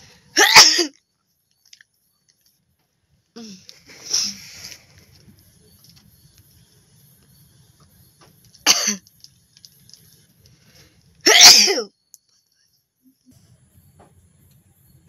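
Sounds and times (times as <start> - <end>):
person sneezing: 11.3 - 11.9.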